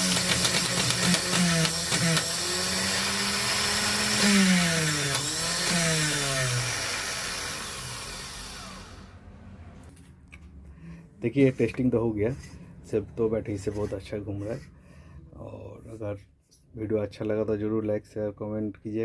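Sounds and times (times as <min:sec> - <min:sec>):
starter motor whine: 0:00.0 - 0:09.3.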